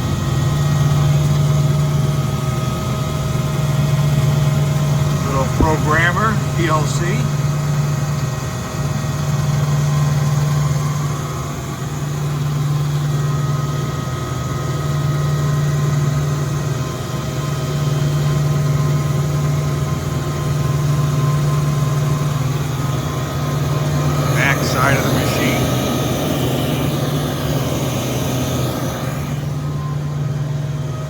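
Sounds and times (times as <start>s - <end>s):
air compressor humming: 5.0s - 7.4s, 21.1s - 31.0s.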